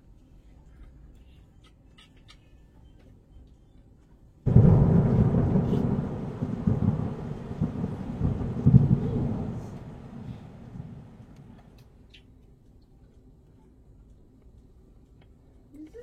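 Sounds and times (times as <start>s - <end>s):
gusty snowstorm wind: 4.4s - 11.8s
wind buffeting microphone: 4.5s - 11.8s
faint ticks: 10.7s - 16.0s.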